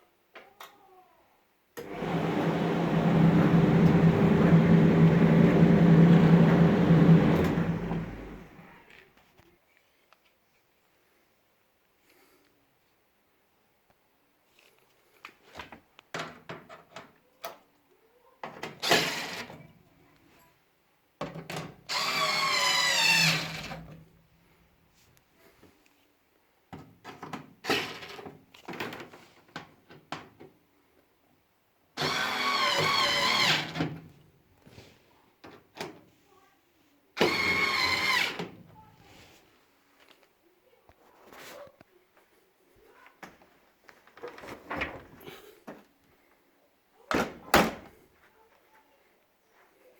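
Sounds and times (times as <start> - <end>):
power drill whining: 1.8 - 8.7, 18.8 - 19.6, 21.9 - 24.0, 32.0 - 34.0, 37.2 - 38.6.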